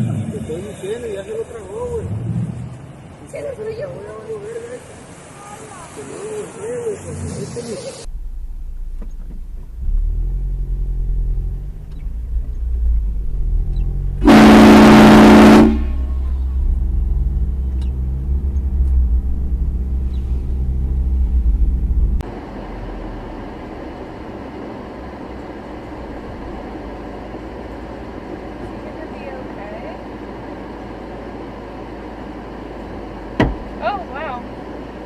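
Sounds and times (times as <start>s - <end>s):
vehicle engine and road rumble: 0.0s - 35.0s
loud horn blast: 14.0s - 22.2s.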